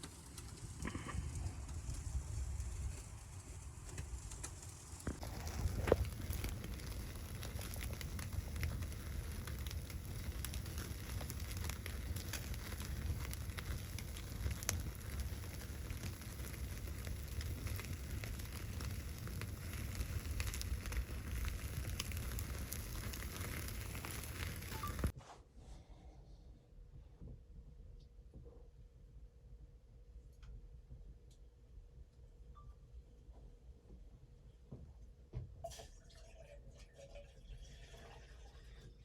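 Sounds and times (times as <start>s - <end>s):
wood fire crackling: 0.0s - 25.2s
low rumble: 0.6s - 25.1s.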